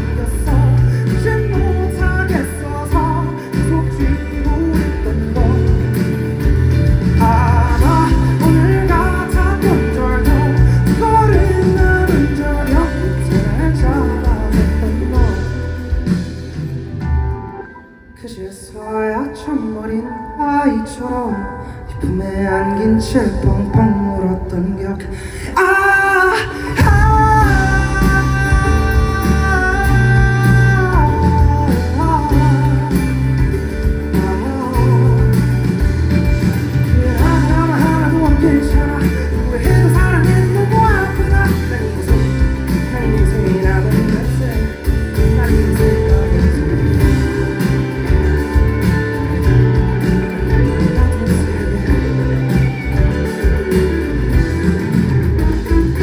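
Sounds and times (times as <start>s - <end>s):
guitar and bass: 0.0s - 18.1s, 26.5s - 56.0s
live pop-rock band music: 0.0s - 56.0s
man singing a long note: 18.2s - 33.0s.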